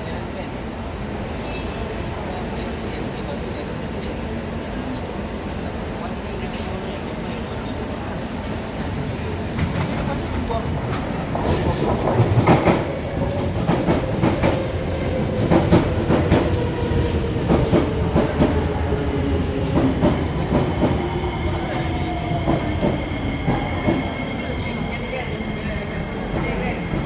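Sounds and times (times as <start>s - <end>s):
train wheels clattering: 9.5s - 18.7s.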